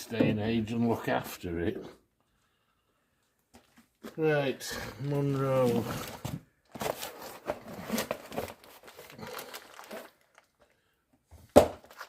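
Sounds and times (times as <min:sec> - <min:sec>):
packaging crinkling and tearing: 0:05.3 - 0:10.8.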